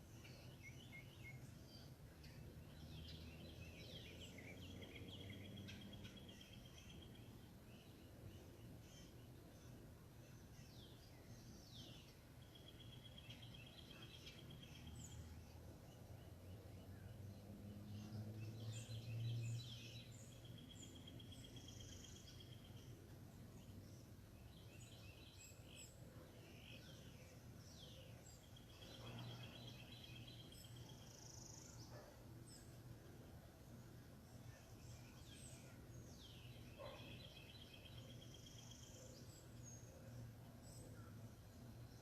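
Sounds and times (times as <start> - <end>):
birds calling: 34.6 - 39.8.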